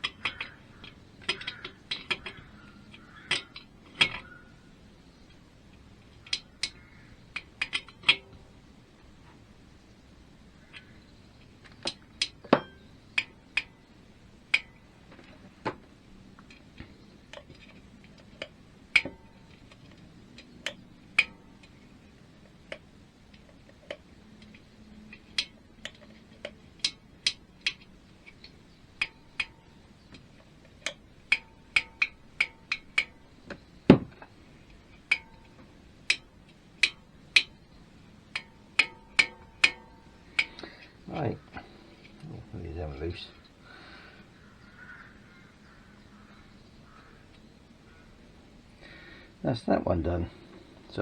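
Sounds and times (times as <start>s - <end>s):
hand tools clicking on metal: 0.0s - 4.4s, 5.2s - 8.5s, 14.5s - 15.5s, 16.3s - 43.6s.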